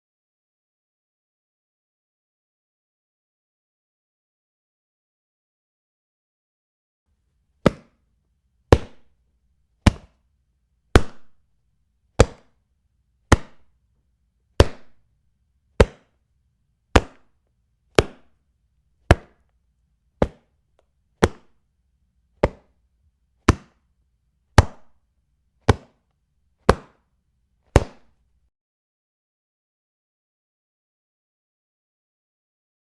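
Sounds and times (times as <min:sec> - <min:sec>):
shoes slapping together: 0:07.6 - 0:08.0, 0:08.7 - 0:09.1, 0:09.8 - 0:10.2, 0:10.9 - 0:11.4, 0:12.2 - 0:12.5, 0:13.3 - 0:13.7, 0:14.6 - 0:15.0, 0:15.8 - 0:16.1, 0:17.0 - 0:17.3, 0:18.0 - 0:18.3, 0:19.1 - 0:19.4, 0:20.2 - 0:20.5, 0:21.2 - 0:21.6, 0:22.4 - 0:22.8, 0:23.4 - 0:23.8, 0:24.6 - 0:24.9, 0:25.7 - 0:26.0, 0:26.7 - 0:27.0, 0:27.7 - 0:28.2.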